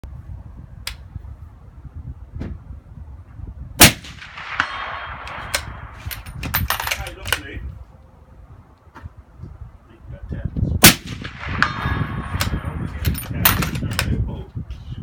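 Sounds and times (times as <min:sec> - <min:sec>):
suppressed rifle shot: 0:03.8 - 0:06.0, 0:10.8 - 0:12.6.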